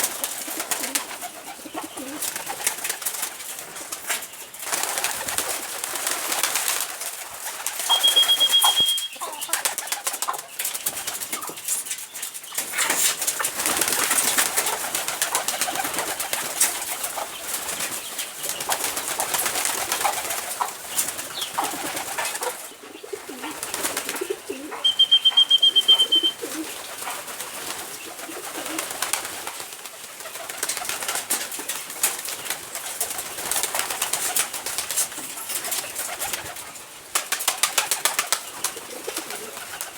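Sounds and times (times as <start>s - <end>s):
soft low poultry calls: 7.7s - 10.6s, 15.6s - 29.0s.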